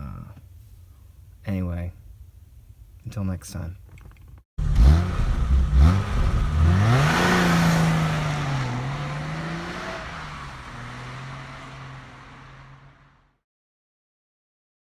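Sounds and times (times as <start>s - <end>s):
car engine revving: 4.6s - 13.3s.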